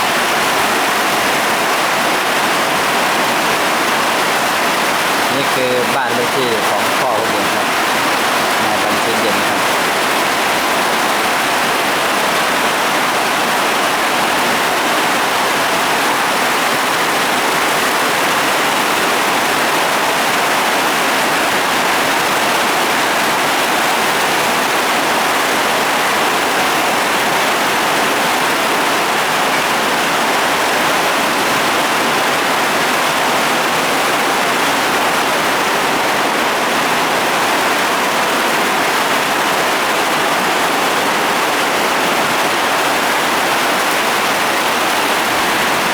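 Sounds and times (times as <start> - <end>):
heavy rain pouring: 0.0 - 45.9.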